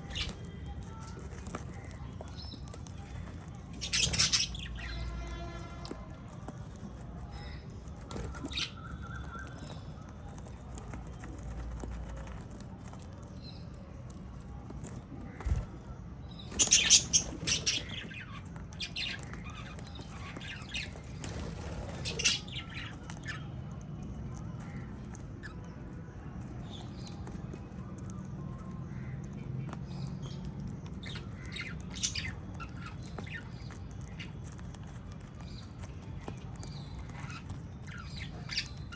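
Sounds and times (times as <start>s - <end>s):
parrots squawking: 3.7s - 5.2s, 16.6s - 18.4s, 22.0s - 22.8s.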